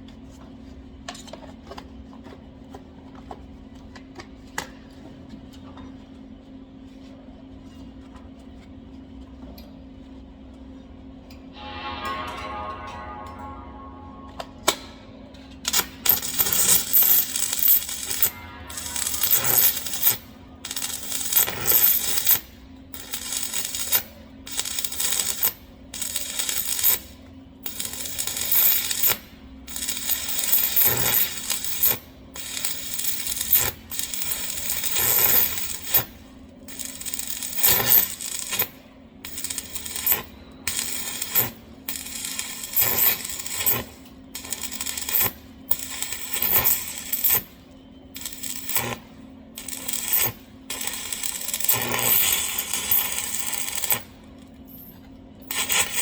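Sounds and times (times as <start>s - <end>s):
low hum: 11.5s - 16.1s
welding arc crackling and sizzling: 15.7s - 47.6s, 48.2s - 54.2s, 55.5s - 56.0s.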